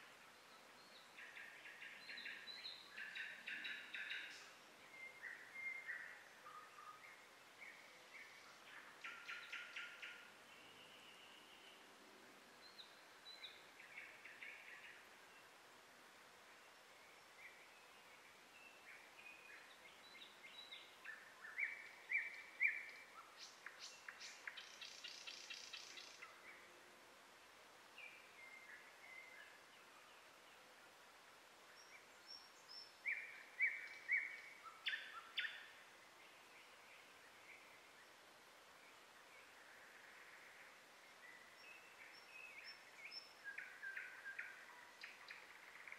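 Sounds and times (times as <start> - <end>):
low outdoor hiss: 0.0 - 45.9
songbird chirping: 0.0 - 45.9.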